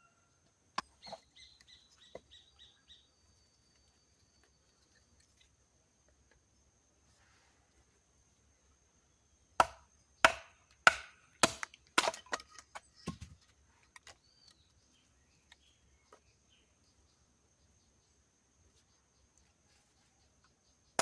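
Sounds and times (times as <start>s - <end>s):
hatchet chopping wood: 9.6s - 13.3s.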